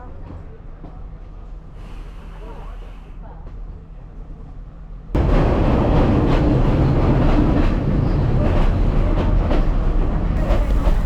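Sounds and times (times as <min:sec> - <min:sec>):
train wheels clattering over rails: 0:05.2 - 0:11.0.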